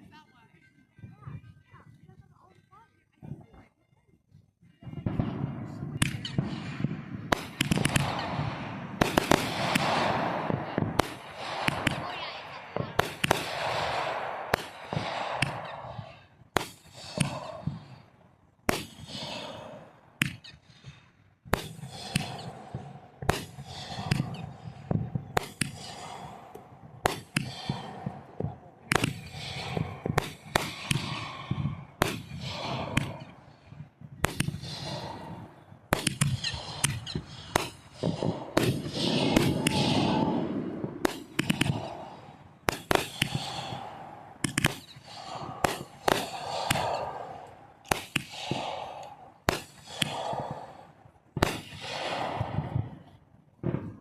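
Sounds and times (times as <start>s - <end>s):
fireworks bangs with crackling: 4.8s - 54.0s.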